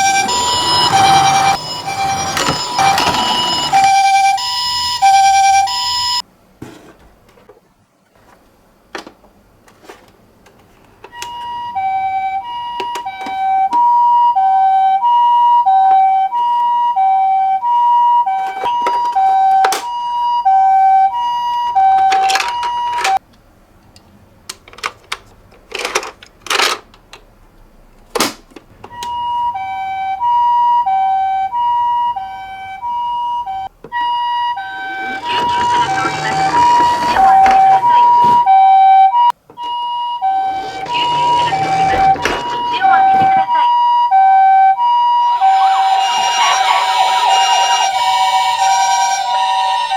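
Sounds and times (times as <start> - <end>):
toy ambulance two-tone siren: 0.0 - 6.2, 11.1 - 23.2, 28.8 - 49.9.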